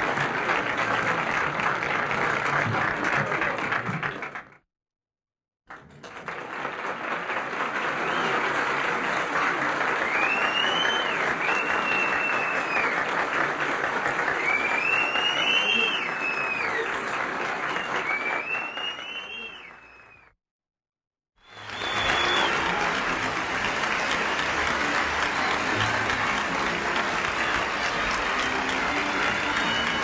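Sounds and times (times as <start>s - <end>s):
crowd applauding and cheering: 0.0s - 4.6s, 5.7s - 20.3s, 21.4s - 30.0s
shrill gliding whistles: 10.1s - 12.9s, 17.8s - 20.3s, 21.4s - 22.6s.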